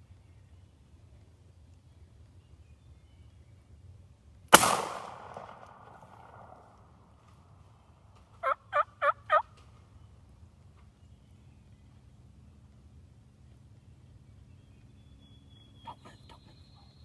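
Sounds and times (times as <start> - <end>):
sharp echoing bang: 4.5 - 6.7
wild turkey gobbling: 8.4 - 9.5.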